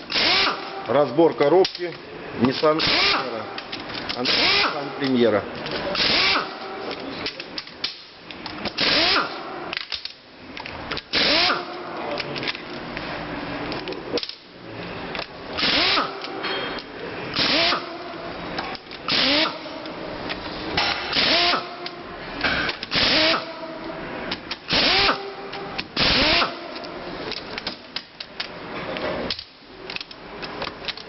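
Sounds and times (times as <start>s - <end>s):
power tool bursts: 0.1s - 0.7s, 2.8s - 3.3s, 4.2s - 4.8s, 6.0s - 6.5s, 8.8s - 9.4s, 11.1s - 11.7s, 15.6s - 16.2s, 17.4s - 17.9s, 19.1s - 19.6s, 21.1s - 21.7s, 22.9s - 23.5s, 24.7s - 25.3s, 26.0s - 26.6s.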